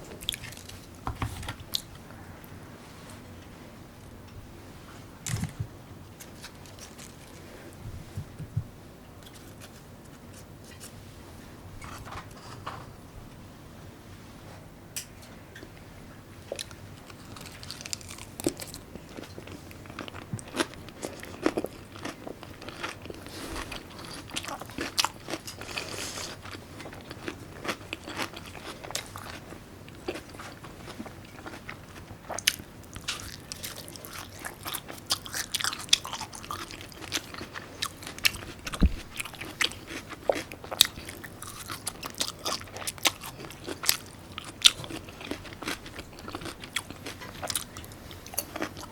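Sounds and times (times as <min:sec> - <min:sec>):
close chewing and mouth sounds: 0:00.0 - 0:02.0, 0:05.2 - 0:08.2, 0:15.6 - 0:48.9.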